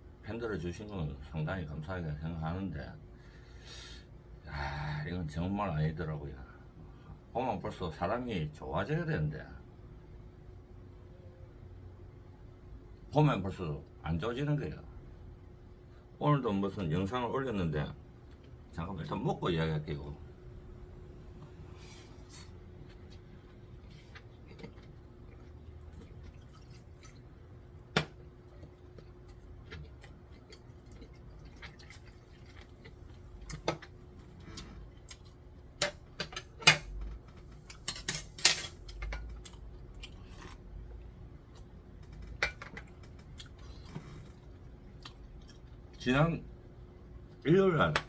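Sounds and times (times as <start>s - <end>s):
faint steady hum: 0.0s - 48.0s
utensils clinking against dishes: 37.7s - 39.3s.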